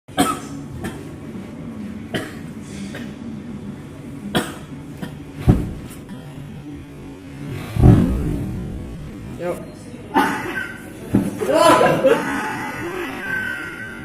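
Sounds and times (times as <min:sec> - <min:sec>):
steady low hum: 0:00.1 - 0:14.0
person coughing: 0:00.2 - 0:01.1, 0:02.2 - 0:03.2, 0:10.1 - 0:10.9, 0:11.6 - 0:13.1.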